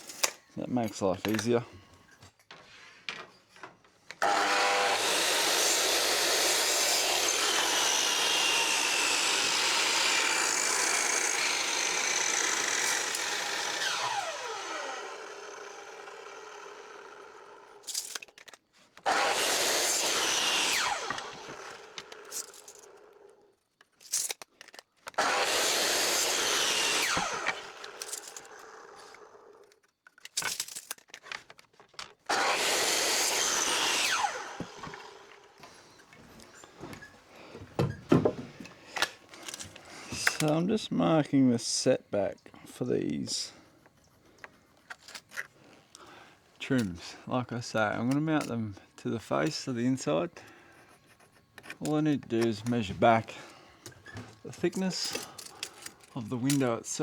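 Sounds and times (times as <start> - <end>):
electric saw cutting timber: 4.2 - 17.9, 19.0 - 23.4, 25.1 - 29.7, 32.3 - 37.0
saw blade winding down: 4.2 - 18.3, 19.0 - 23.4, 25.1 - 29.7, 32.3 - 36.6, 38.9 - 41.2, 46.0 - 57.0.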